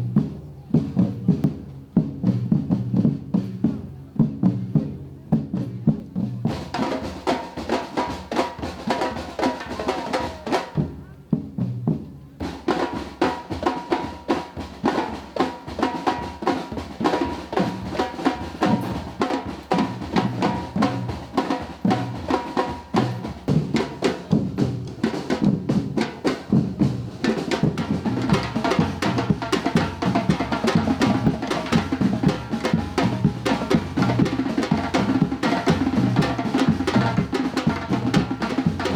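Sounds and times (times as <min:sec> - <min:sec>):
bass drums: 0:00.0 - 0:06.9, 0:17.5 - 0:38.9
samba percussion band: 0:00.0 - 0:38.9.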